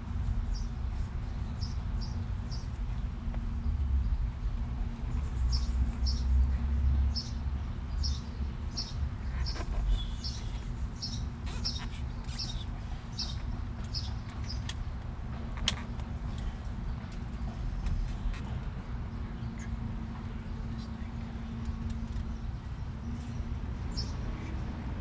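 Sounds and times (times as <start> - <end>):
small bird chirping: 7.1 - 14.7.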